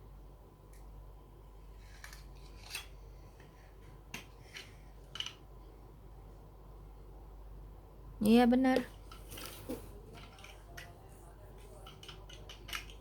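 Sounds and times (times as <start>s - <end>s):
plastic toy bricks clicking together: 5.1s - 5.4s, 11.8s - 13.0s.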